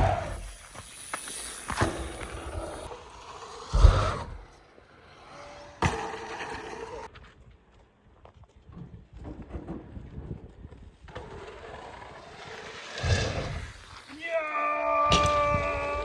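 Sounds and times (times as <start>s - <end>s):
heavy bike thumps: 3.7s - 4.4s.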